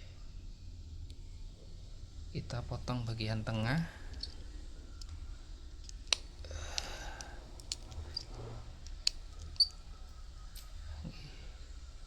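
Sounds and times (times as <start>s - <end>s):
wires rustling: 4.1s - 10.9s.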